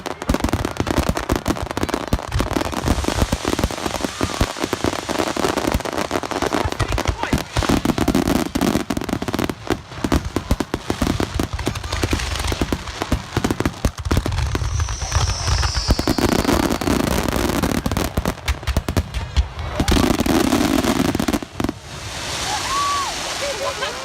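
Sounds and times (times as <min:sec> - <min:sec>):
fireworks crackling bangs: 0:00.0 - 0:22.9
falling firework whistle: 0:14.2 - 0:17.9.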